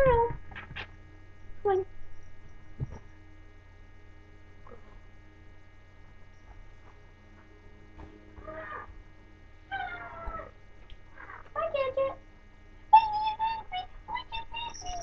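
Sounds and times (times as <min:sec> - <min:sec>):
electrical hum: 0:00.0 - 0:15.0
puppy crying: 0:09.7 - 0:10.6.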